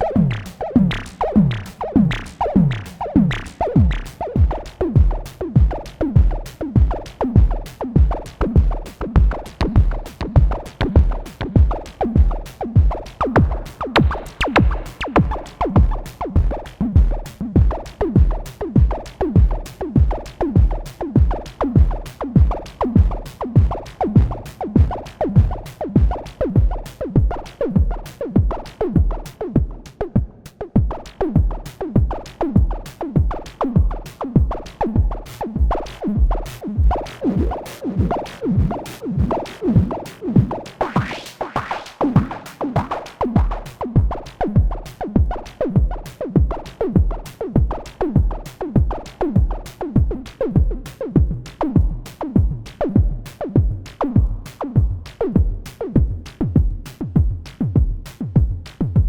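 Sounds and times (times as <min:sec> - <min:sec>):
electronic drum hits: 0:13.3 - 0:17.7.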